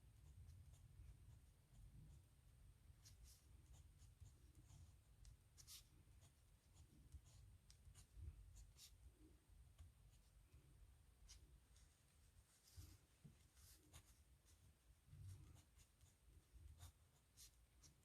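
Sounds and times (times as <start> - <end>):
pen scratching on paper: 0.1 - 9.1, 12.7 - 18.0.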